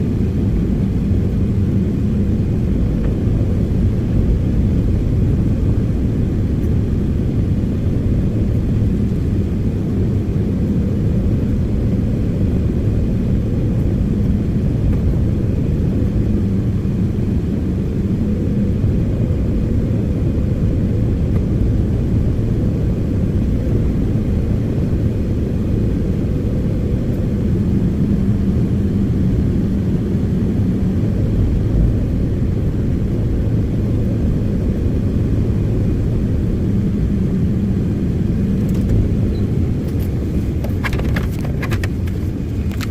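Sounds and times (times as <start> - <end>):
diesel engine rumbling: 31.3 - 42.9.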